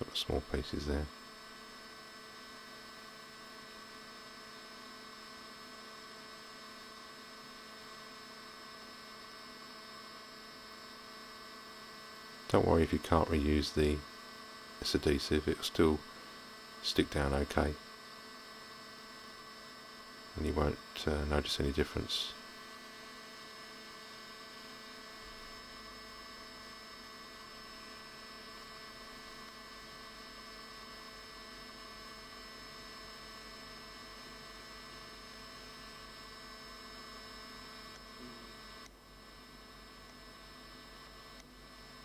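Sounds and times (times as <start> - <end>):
electrical hum: 0.0 - 42.0.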